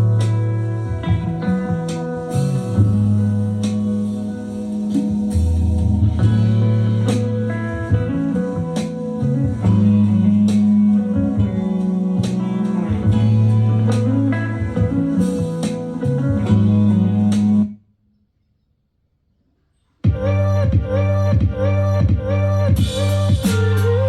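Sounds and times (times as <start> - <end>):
blues guitar music with bass: 0.0 - 17.8, 20.1 - 24.0.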